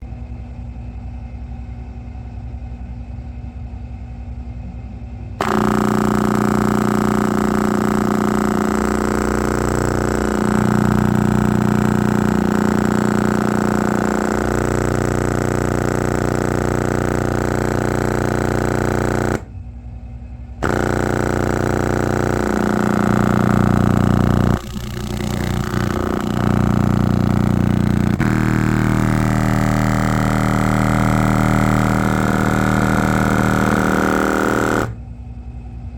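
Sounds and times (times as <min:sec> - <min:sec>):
distorted loudspeaker bass tone: 0:05.4 - 0:19.6, 0:20.6 - 0:35.0.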